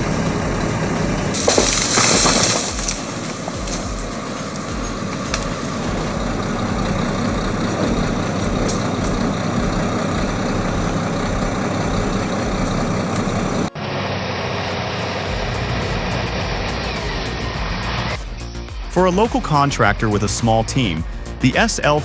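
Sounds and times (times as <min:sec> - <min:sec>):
diesel engine under load: 0:00.0 - 0:18.2.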